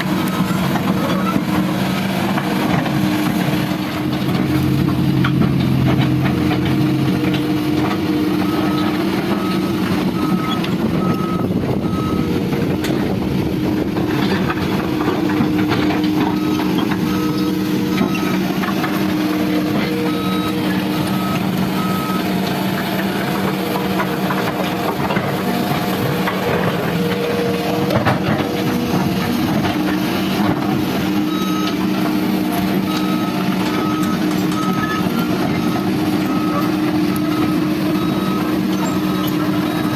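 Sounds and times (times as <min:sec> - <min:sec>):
diesel engine running: 0:00.0 - 0:39.9
reversing alarm beeping: 0:00.1 - 0:39.9.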